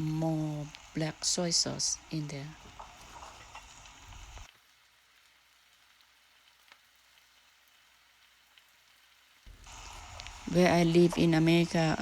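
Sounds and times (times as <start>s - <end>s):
noodles sizzling in a pot: 0.0s - 12.0s
small ticks: 2.6s - 4.6s, 9.5s - 10.5s.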